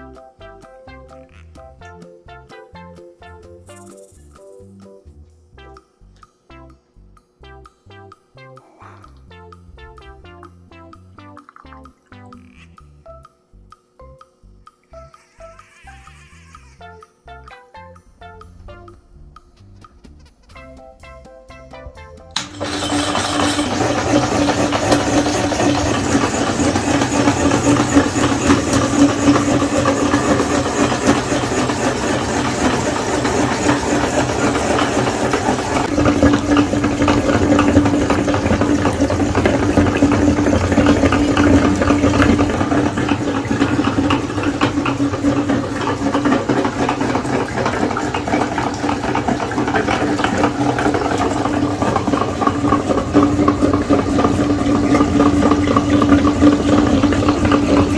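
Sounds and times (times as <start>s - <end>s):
electric meat grinder running: 22.4s - 57.9s.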